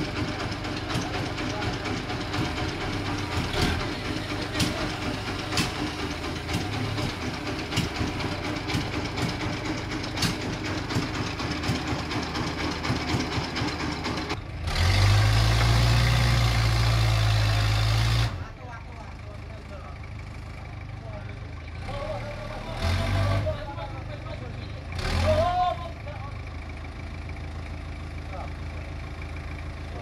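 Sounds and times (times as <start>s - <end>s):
knocks and clatter: 0.0s - 14.4s
sawmill machinery running: 0.0s - 18.4s.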